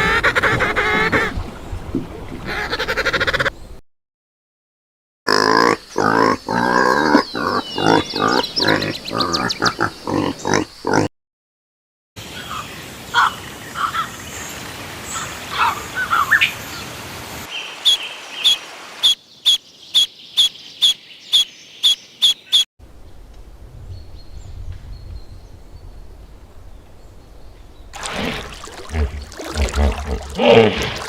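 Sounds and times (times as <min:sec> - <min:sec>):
birds chirping: 0:05.6 - 0:11.1, 0:12.3 - 0:22.7.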